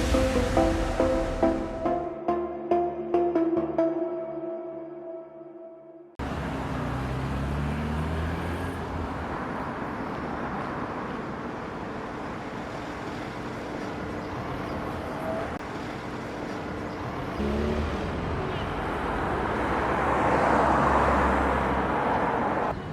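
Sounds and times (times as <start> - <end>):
city street traffic: 6.2 - 22.9
vehicle engine humming nearby: 6.2 - 22.9.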